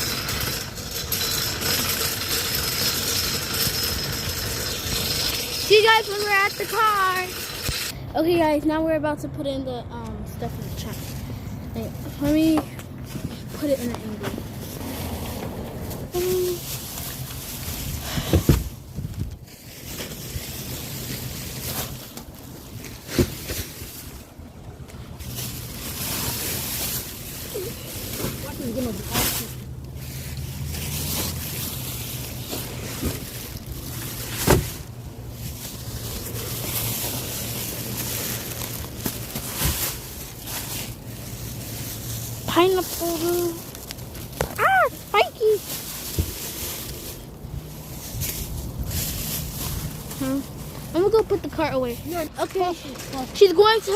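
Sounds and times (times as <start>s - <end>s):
wind buffeting microphone: 17.7s - 19.4s
bags set into car trunk: 30.8s - 41.1s
shopping thudding in car trunk: 32.5s - 35.5s.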